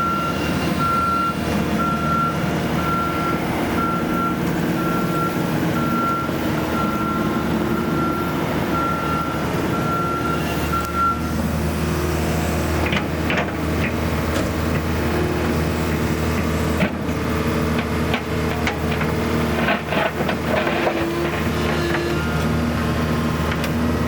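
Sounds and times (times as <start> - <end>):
travel alarm beeping: 0.0 - 11.3
excavator diesel engine running: 0.0 - 24.0.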